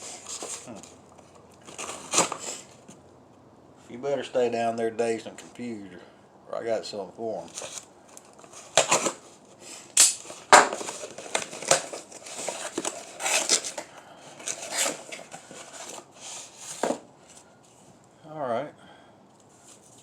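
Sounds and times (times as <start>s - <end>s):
packaging crinkling and tearing: 1.5s - 2.8s, 7.5s - 16.6s.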